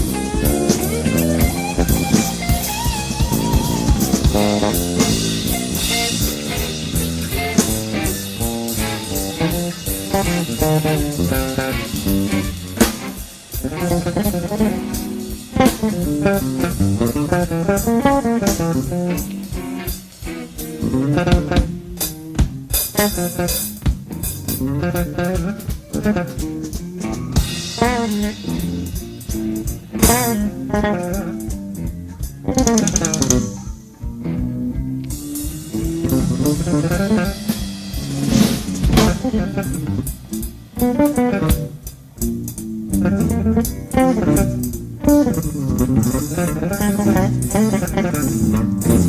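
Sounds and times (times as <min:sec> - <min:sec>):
fretless electric bass runs: 0:00.0 - 0:19.6, 0:33.2 - 0:49.0
drum kit: 0:00.0 - 0:49.0
electric guitar: 0:00.0 - 0:49.0.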